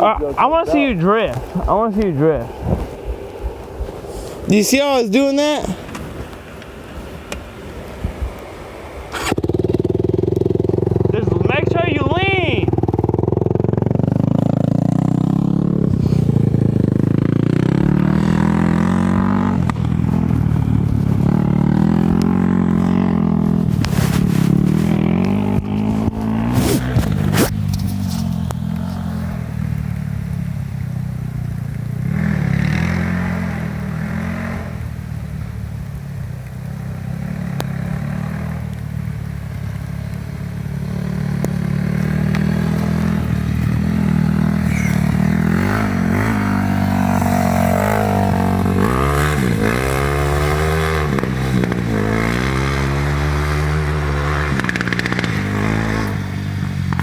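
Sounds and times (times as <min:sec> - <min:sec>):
off-road motorcycle engine revving: 0:00.0 - 0:06.0, 0:09.1 - 0:57.0.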